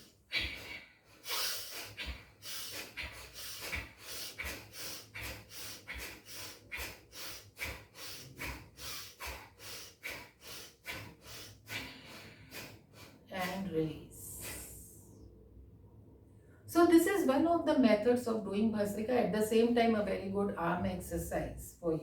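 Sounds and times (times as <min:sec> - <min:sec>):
rapid forceful nose breathing: 0:00.0 - 0:13.3.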